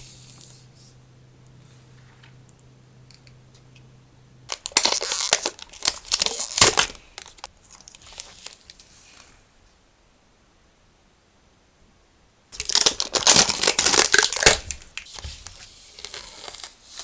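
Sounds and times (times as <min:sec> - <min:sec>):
packaging crinkling and rustling: 0:04.5 - 0:09.2, 0:12.6 - 0:17.0.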